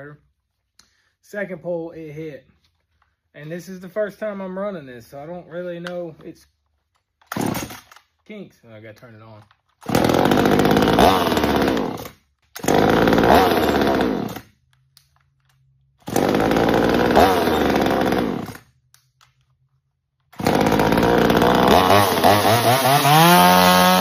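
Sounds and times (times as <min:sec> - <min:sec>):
chainsaw revving: 0:07.3 - 0:08.0, 0:09.8 - 0:14.5, 0:16.0 - 0:18.7, 0:20.3 - 0:24.0.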